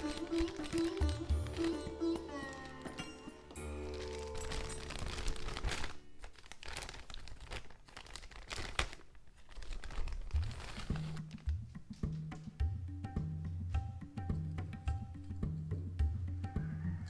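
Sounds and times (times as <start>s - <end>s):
packaging crinkling and rustling: 0.0s - 3.0s, 3.6s - 11.4s.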